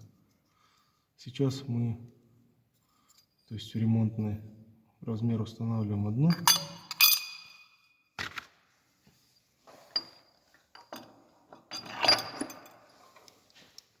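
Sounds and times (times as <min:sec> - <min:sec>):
small steel parts clinking: 0:06.3 - 0:07.9, 0:10.0 - 0:13.6.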